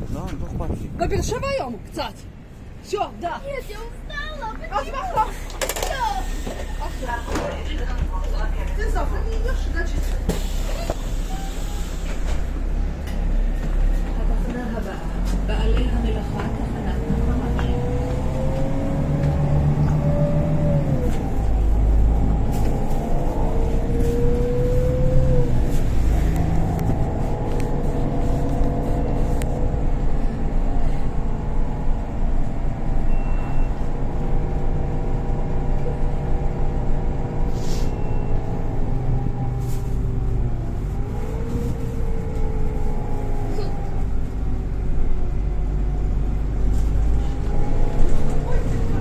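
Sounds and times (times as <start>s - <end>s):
bus engine drone: 0.0s - 49.0s
short hisses: 37.5s - 38.0s.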